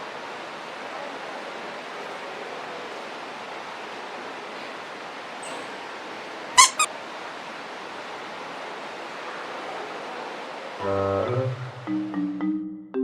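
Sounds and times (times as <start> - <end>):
sharp squeaks: 6.6 - 6.9.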